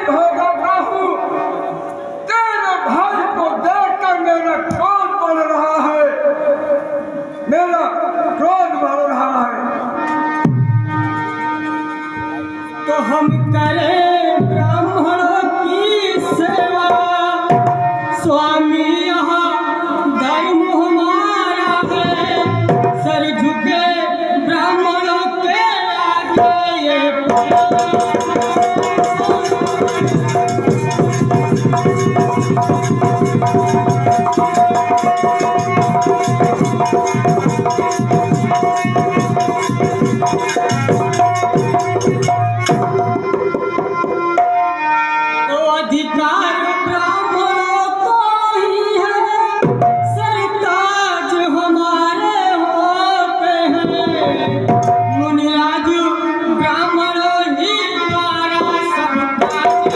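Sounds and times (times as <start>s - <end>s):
person singing: 12.1s - 43.2s, 45.4s - 59.9s
fast hand drum playing: 16.3s - 18.2s, 21.8s - 23.2s, 27.3s - 44.7s, 53.7s - 55.4s, 58.0s - 59.9s.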